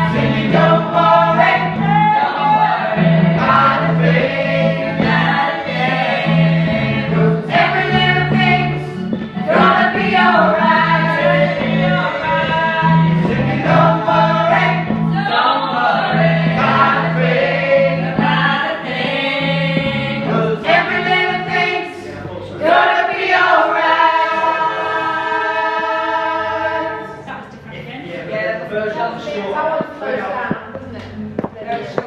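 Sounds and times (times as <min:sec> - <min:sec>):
choir singing gospel: 0:00.0 - 0:27.5.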